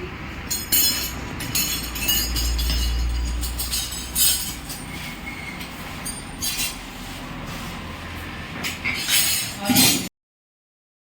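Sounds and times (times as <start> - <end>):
workshop background noise: 0.0 - 10.1
metallic clinks and knocks: 0.5 - 6.8
metal clattering: 0.5 - 6.9.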